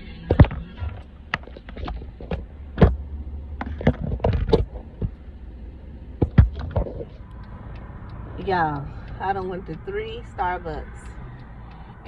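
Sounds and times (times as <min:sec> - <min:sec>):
car low rumble: 0:00.0 - 0:12.0
sharp clicks and knocks: 0:00.3 - 0:05.4, 0:06.1 - 0:08.5.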